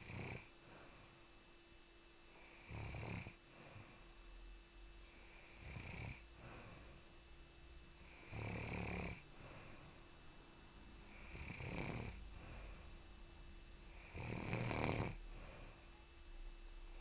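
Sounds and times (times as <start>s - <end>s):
person snoring: 0.0s - 0.5s, 2.4s - 3.4s, 5.3s - 6.8s, 8.0s - 9.3s, 11.1s - 12.8s, 13.9s - 15.2s
quiet breathing: 0.0s - 1.4s, 2.3s - 17.0s.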